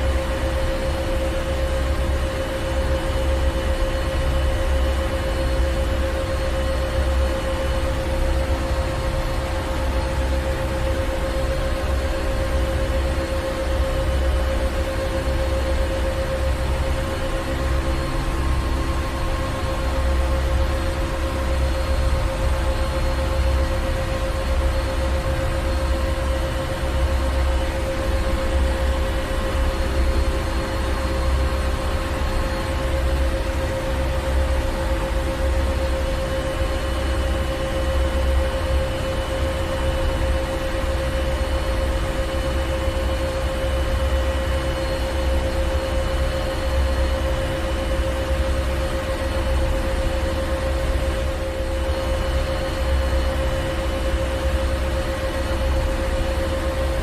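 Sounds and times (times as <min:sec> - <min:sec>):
constant hum: 0:00.0 - 0:57.0.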